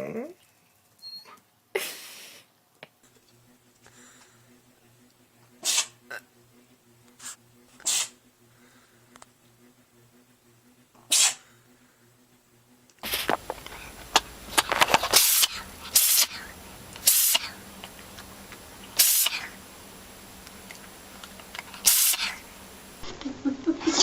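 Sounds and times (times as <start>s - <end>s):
pet sneezing: 5.6s - 6.2s, 7.2s - 8.2s, 11.0s - 11.5s, 14.6s - 17.6s, 19.0s - 19.6s, 21.8s - 22.4s.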